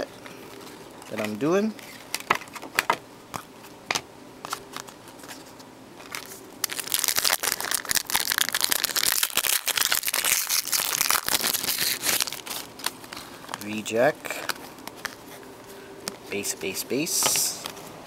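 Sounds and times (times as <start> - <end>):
wrapper tearing and crinkling: 6.0 - 15.3.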